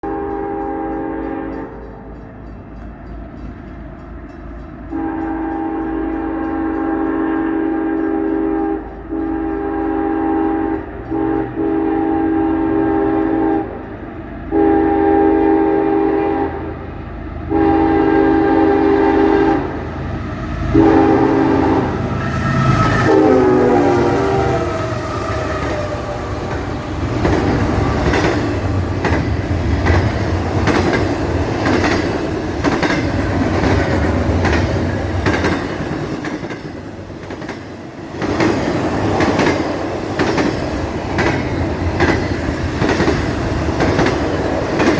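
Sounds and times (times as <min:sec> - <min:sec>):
locomotive air horn blasts: 0:00.0 - 0:01.8, 0:04.9 - 0:13.7, 0:14.5 - 0:16.6, 0:17.5 - 0:19.8, 0:20.7 - 0:25.6.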